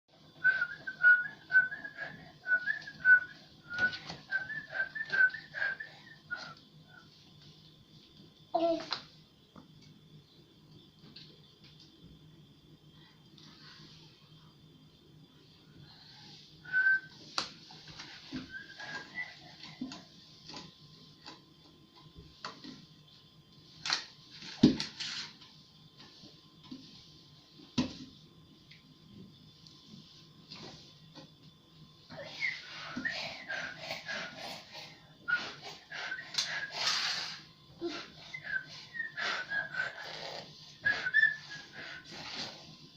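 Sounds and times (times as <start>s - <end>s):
baby whistling: 32.1s - 34.7s, 35.3s - 42.1s.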